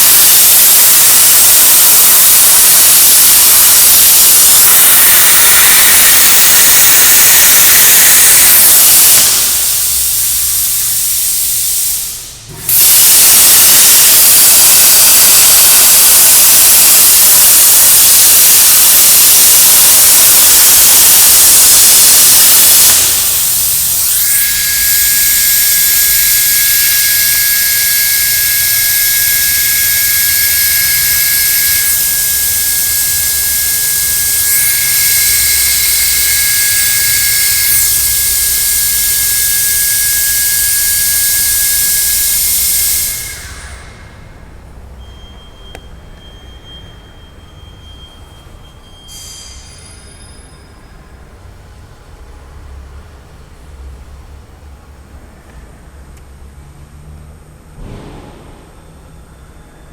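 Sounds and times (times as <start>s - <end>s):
plasma torch cutting hiss: 0.0s - 44.4s, 49.1s - 50.2s
two steady high tones: 0.0s - 50.8s.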